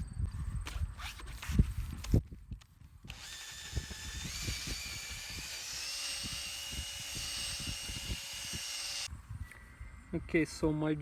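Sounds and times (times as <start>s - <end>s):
cordless drill whining: 3.1s - 9.1s.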